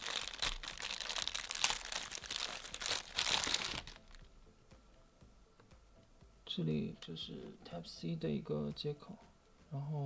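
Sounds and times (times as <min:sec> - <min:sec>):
plastic packaging crinkling: 0:00.0 - 0:04.2.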